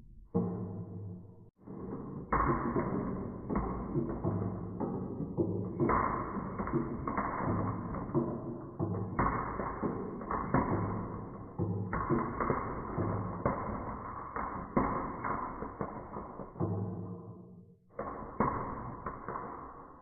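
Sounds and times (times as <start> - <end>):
marbles rolling down marble run: 1.7 - 17.2.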